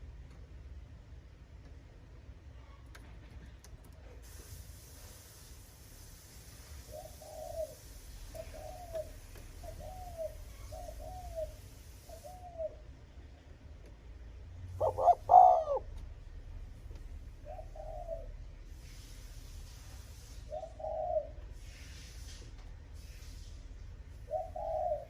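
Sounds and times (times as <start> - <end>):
dove cooing: 6.8 - 12.9, 14.7 - 16.0, 17.4 - 18.5, 20.5 - 21.4, 24.2 - 25.0.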